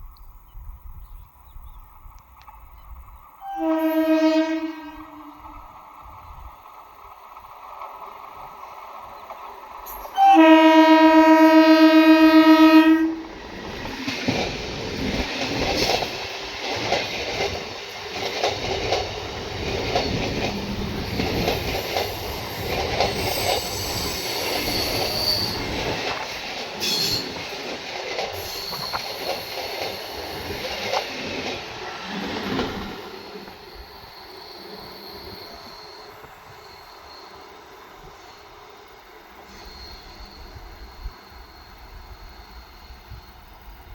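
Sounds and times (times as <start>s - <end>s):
train wheels clattering: 13.3s - 34.2s
high wheel squeal: 22.0s - 26.2s, 32.8s - 37.4s, 39.4s - 43.4s.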